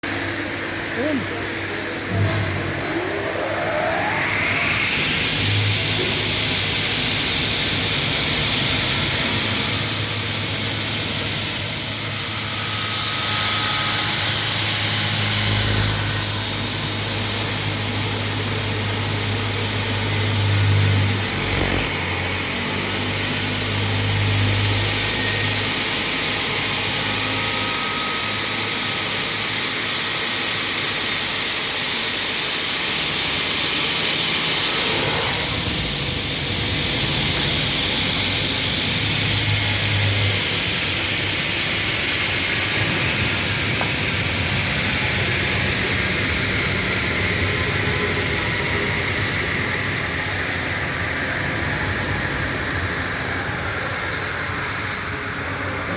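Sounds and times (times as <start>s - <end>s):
cutting saw high whine: 0.0s - 55.9s
loud whooshing: 1.6s - 27.2s.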